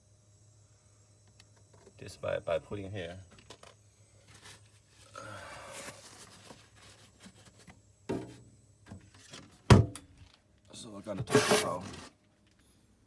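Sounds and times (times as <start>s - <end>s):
soft handling rustle: 4.2s - 7.8s.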